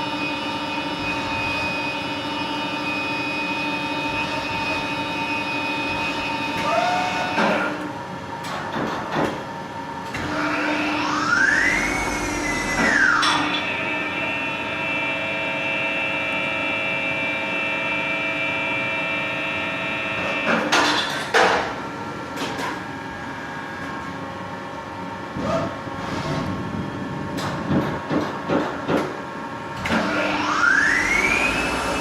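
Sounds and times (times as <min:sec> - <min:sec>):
lathe whine: 0:10.2 - 0:20.5, 0:29.8 - 0:32.0.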